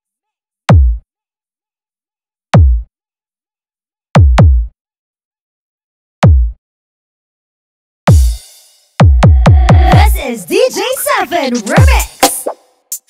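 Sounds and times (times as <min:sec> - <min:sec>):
electronic bass kick hits: 0:04.2 - 0:04.7, 0:06.2 - 0:06.6, 0:08.1 - 0:08.4, 0:09.0 - 0:10.2.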